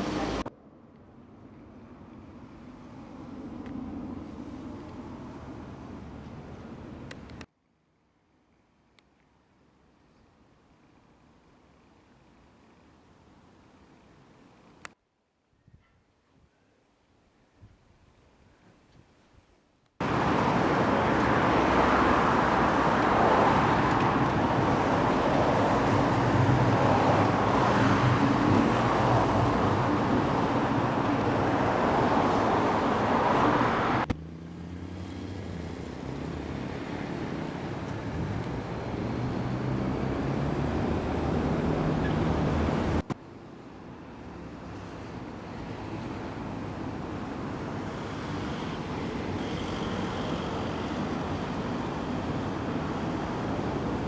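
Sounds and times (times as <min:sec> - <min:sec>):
road traffic: 0:00.0 - 0:07.5, 0:20.0 - 0:54.0
low engine hum: 0:20.0 - 0:43.1.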